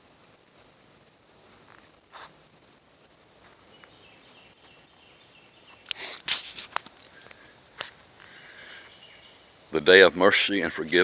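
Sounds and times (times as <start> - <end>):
high-pitched insect trill: 0.0 - 11.0
rustling: 5.6 - 8.8.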